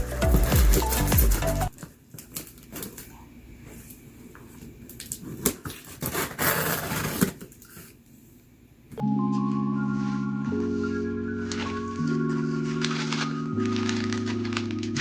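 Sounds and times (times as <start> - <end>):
packaging rustling: 11.4 - 15.0.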